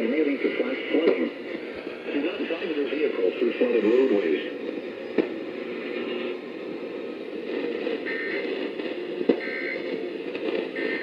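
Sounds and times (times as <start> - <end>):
radio static hiss: 0.0 - 11.0
static click: 1.0 - 1.3.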